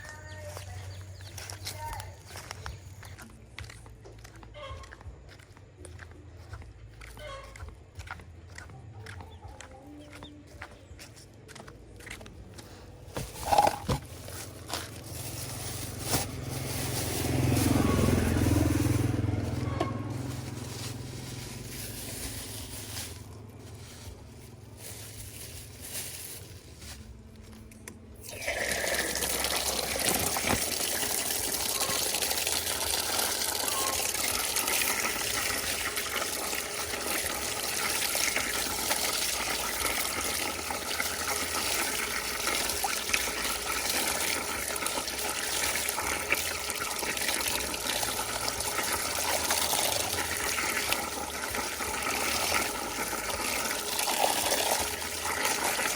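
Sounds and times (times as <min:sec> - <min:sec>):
water running: 0:28.2 - 0:55.9.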